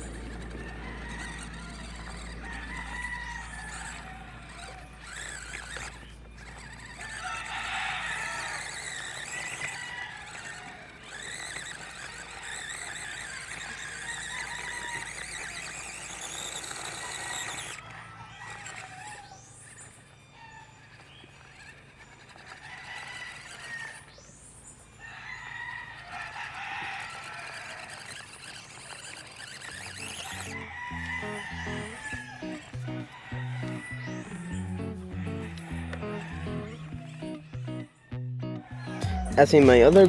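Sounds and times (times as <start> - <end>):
electric motor and gearbox whining: 0.0 - 40.0.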